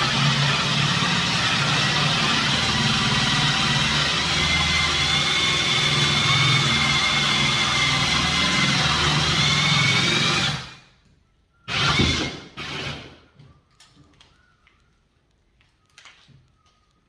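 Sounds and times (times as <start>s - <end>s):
power drill cutting with whine: 0.0s - 10.9s, 11.7s - 13.2s.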